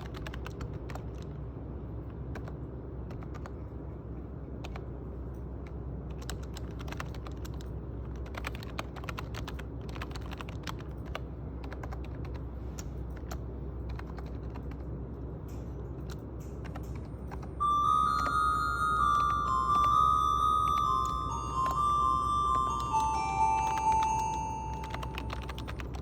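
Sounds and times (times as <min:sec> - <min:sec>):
low steady hum: 0:00.0 - 0:26.0
keyboard typing clicks: 0:05.6 - 0:14.9, 0:16.0 - 0:26.0
chiming glockenspiel-like melody: 0:17.6 - 0:26.0.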